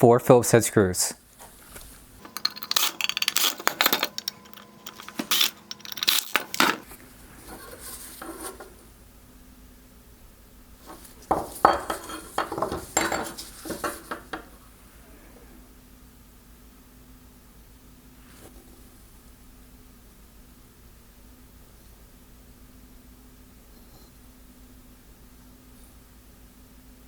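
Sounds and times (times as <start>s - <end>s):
screwdriver and screws clicking: 2.2s - 6.9s, 11.3s - 14.5s
hard plastic parts rattling: 2.2s - 8.8s, 10.9s - 14.6s.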